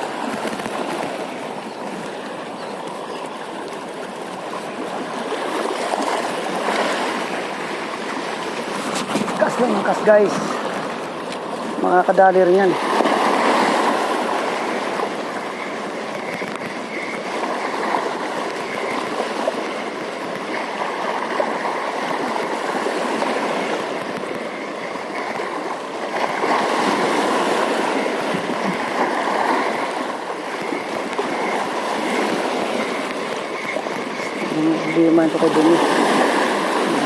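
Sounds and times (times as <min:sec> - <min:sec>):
flowing water rushing: 0:00.0 - 0:37.0.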